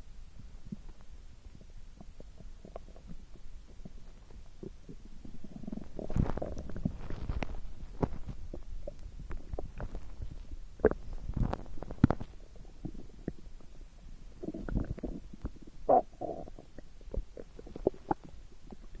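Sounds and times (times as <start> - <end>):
stomach gurgling and rumbling: 0.0 - 19.0.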